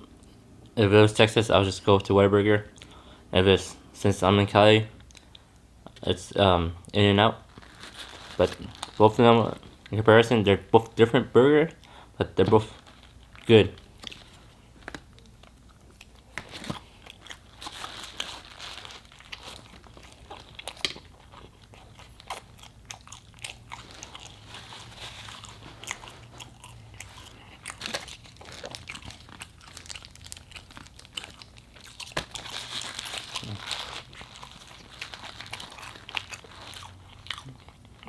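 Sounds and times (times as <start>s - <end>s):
person chewing food: 12.8s - 38.0s.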